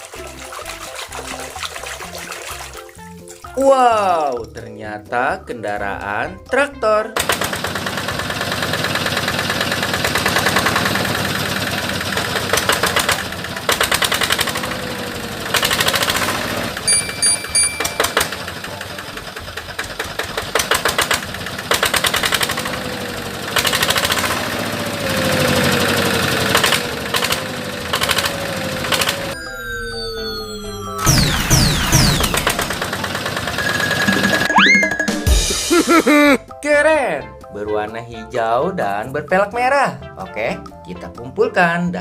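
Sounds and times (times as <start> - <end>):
cleaning tool motor buzzing: 7.2 - 16.9, 18.0 - 29.4, 31.0 - 34.5.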